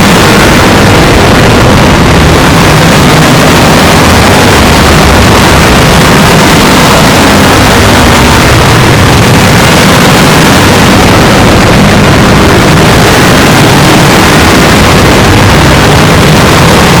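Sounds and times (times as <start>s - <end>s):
harsh distorted noise: 0.0s - 17.0s.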